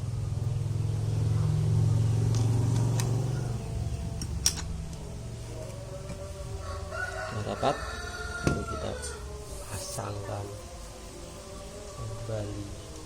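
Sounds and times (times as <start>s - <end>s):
low engine hum: 0.0s - 6.9s.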